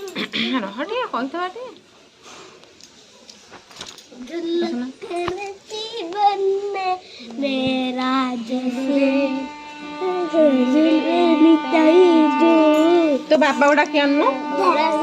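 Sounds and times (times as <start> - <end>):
person singing in high voice: 4.5 - 15.0
steady instrumental notes: 8.4 - 15.0.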